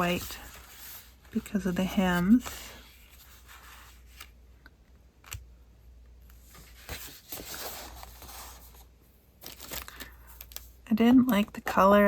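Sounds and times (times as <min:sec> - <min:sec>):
paper rustling: 0:00.0 - 0:04.4, 0:06.3 - 0:10.8.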